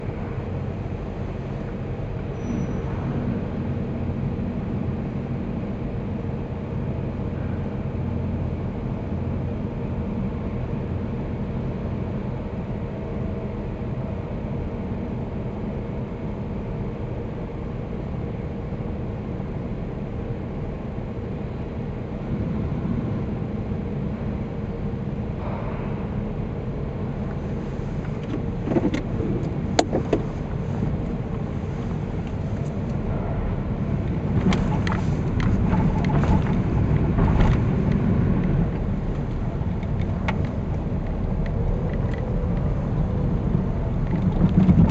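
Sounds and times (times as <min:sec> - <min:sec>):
car engine rumble: 0:00.0 - 0:44.9
sharp clicks and knocks: 0:28.0 - 0:31.4, 0:34.0 - 0:42.7.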